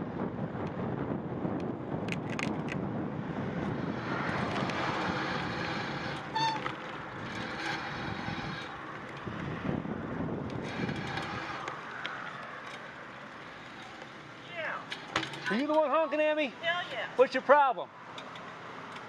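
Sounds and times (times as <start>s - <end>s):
street traffic noise: 0.0s - 19.0s
brief high squeak: 6.3s - 6.8s.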